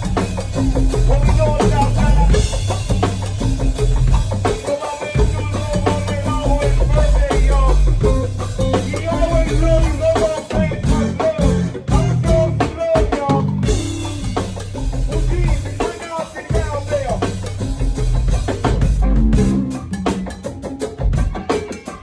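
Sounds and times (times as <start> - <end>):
bass line: 0.0 - 4.6, 5.2 - 21.2
drum kit beat: 0.0 - 22.0
wavering melody line: 19.0 - 20.6.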